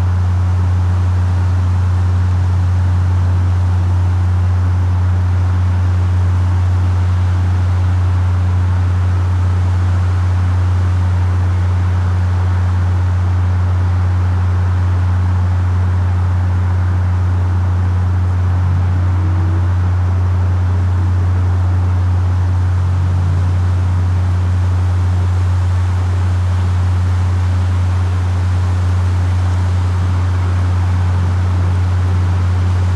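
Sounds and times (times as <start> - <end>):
constant hiss: 0.0 - 32.9
low-frequency hum: 0.0 - 32.9
fainter higher tone: 18.6 - 20.2.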